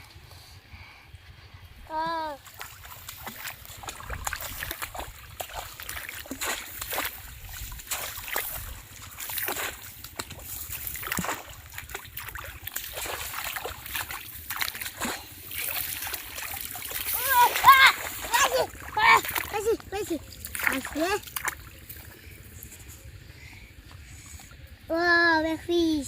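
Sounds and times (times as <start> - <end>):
shallow water splashing: 2.3 - 23.3.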